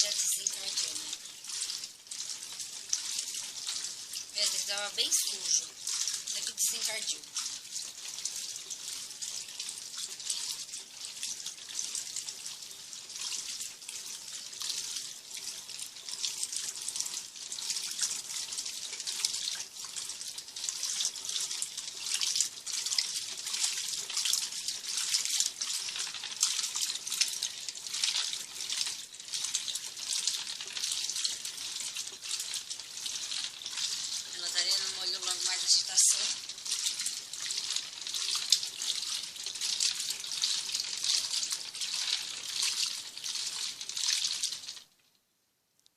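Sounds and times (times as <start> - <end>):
washing machine sloshing water: 0.0 - 44.8.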